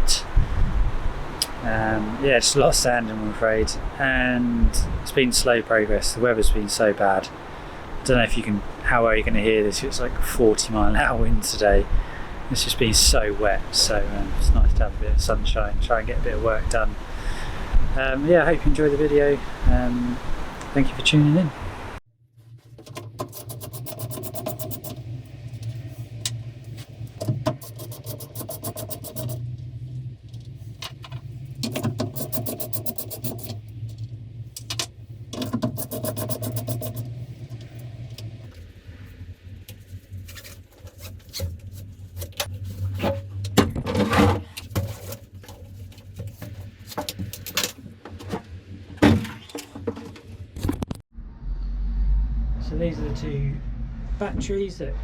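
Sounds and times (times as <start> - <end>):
sander scraping boat hull: 26.9 - 29.4, 31.9 - 33.7, 35.4 - 37.5.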